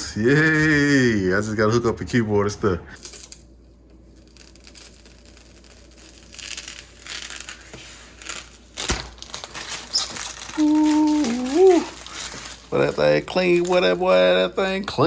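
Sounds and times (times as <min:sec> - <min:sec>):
rustling and crinkling handling noise: 0:07.2 - 0:14.6.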